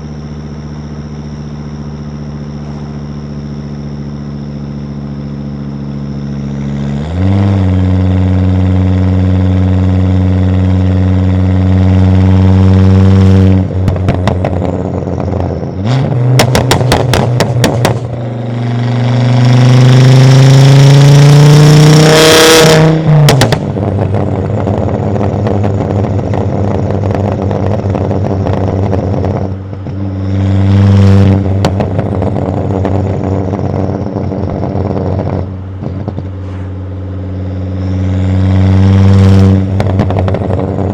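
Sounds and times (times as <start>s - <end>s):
car engine revving: 0.0s - 40.9s
exhaust crackling pops: 7.5s - 19.8s, 22.7s - 40.9s.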